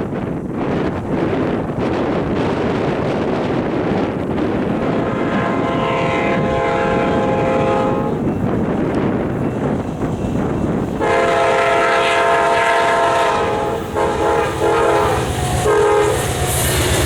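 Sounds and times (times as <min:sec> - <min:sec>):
wind buffeting microphone: 0:00.0 - 0:17.0
locomotive air horn chord: 0:04.8 - 0:08.3, 0:11.0 - 0:17.0.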